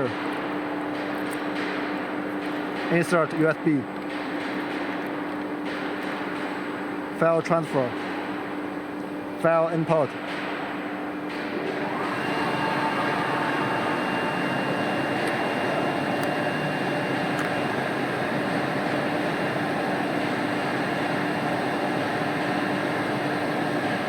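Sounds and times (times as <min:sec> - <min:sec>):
machinery whirring: 0:11.3 - 0:24.0.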